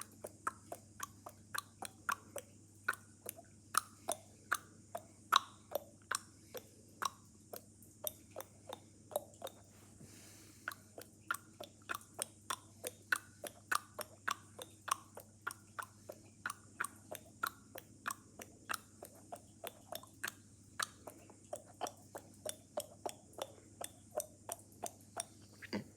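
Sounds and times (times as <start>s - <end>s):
person making clicking noises: 0.0s - 9.7s.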